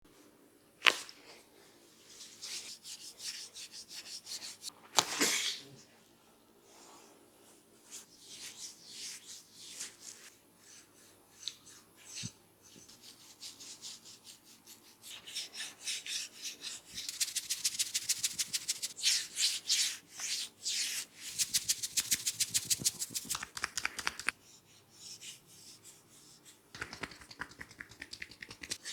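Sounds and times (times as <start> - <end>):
hands rubbing hair and skin: 0.8 - 1.4, 16.8 - 19.0, 20.2 - 24.4, 25.7 - 28.9.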